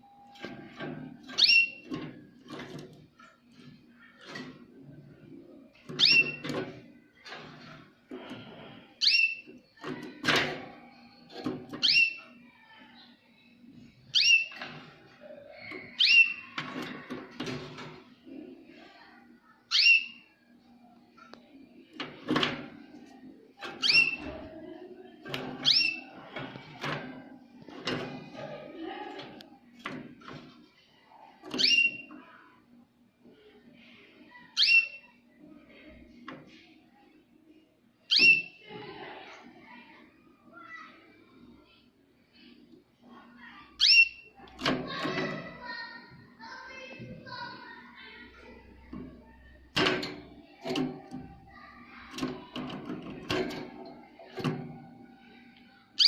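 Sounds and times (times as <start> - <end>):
canary chirping: 0.0 - 2.8, 3.5 - 6.7, 9.0 - 17.6, 19.7 - 20.4, 23.6 - 24.4, 25.3 - 26.8, 31.5 - 32.3, 34.4 - 35.2, 38.0 - 38.7, 43.6 - 45.5
canary chirps and twitters: 0.1 - 18.0, 19.0 - 20.8, 21.8 - 32.5, 34.3 - 35.4, 38.0 - 38.8, 43.1 - 56.0.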